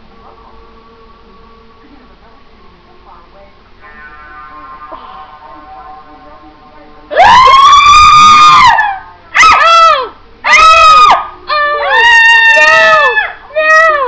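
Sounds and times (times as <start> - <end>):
woman screaming: 7.1 - 14.0.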